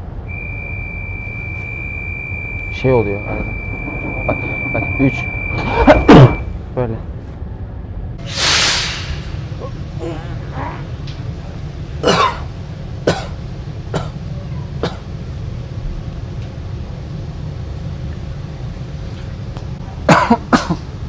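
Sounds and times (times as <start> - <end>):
metro train rumbling: 0.0 - 21.0
person coughing: 12.0 - 12.5, 13.1 - 13.4, 14.0 - 14.2, 20.1 - 20.8.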